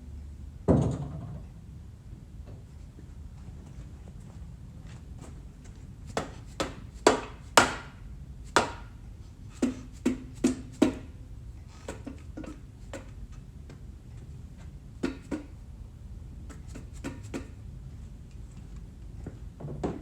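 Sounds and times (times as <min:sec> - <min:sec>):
metal knocks and taps: 0:15.0 - 0:15.6.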